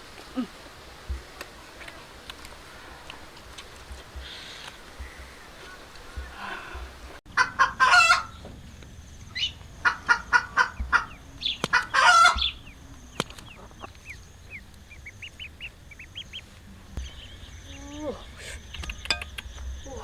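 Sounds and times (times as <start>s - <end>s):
chicken clucking and squawking: 5.4s - 8.5s, 9.2s - 19.1s
faint high chirps: 8.3s - 20.0s.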